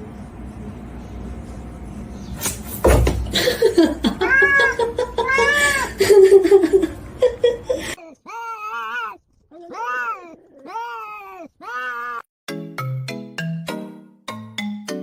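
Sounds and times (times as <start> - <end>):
loud thump: 2.4 - 3.4
cat yowling: 4.2 - 6.0, 8.2 - 12.3.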